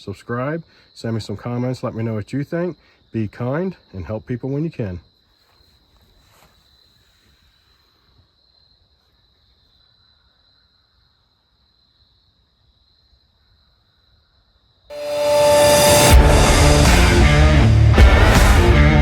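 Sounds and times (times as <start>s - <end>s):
thin high-pitched tone: 14.9s - 17.8s.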